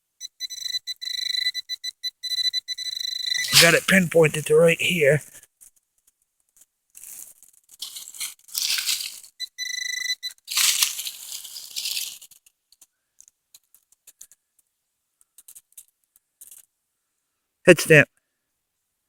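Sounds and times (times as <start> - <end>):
digging and scraping soil: 3.4 - 4.8, 7.8 - 9.3, 10.5 - 12.3.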